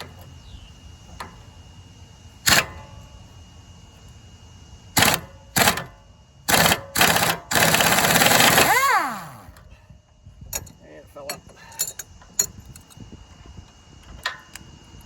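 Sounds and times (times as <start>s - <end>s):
power tool bursts: 5.0s - 5.9s, 6.5s - 9.6s.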